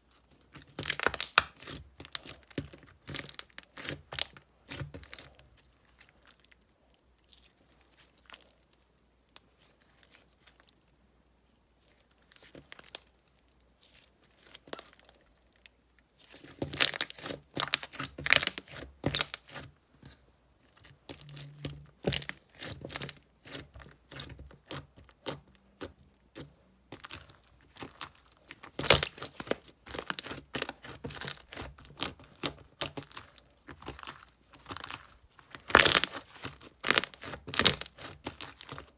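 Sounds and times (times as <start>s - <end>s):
slime clicking and popping: 0.8s - 2.4s.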